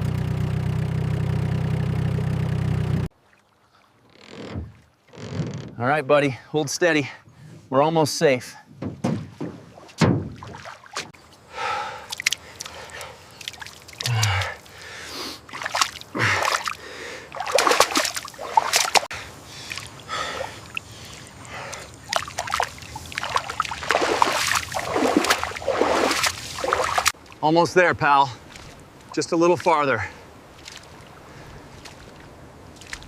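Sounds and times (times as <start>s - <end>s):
water splashing from paddling: 9.0s - 33.0s
gasping breaths: 11.5s - 13.4s, 14.0s - 15.5s, 16.1s - 17.4s, 19.1s - 22.0s.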